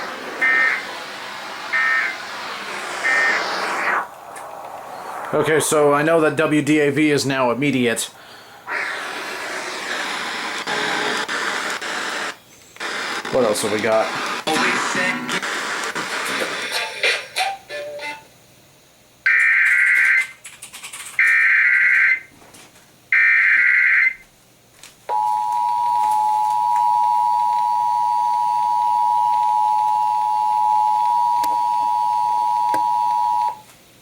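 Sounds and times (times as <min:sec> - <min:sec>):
screeching digital data bursts: 0:00.4 - 0:04.1, 0:08.7 - 0:16.5.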